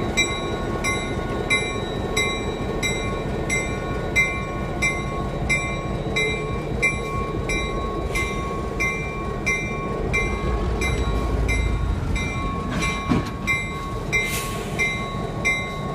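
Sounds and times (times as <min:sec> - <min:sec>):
diesel locomotive rumble: 0:00.0 - 0:15.9
locomotive bell ringing: 0:00.0 - 0:15.9.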